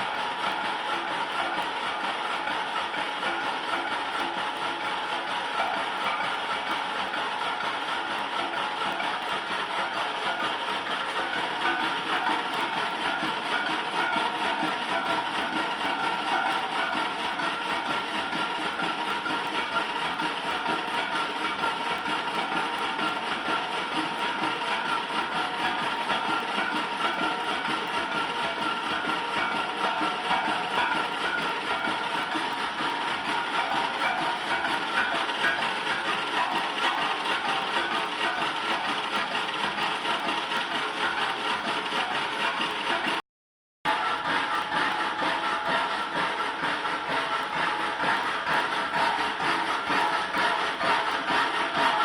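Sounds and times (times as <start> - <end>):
metal lathe running: 0.0 - 43.2, 43.9 - 52.0
lathe humming: 43.9 - 52.0.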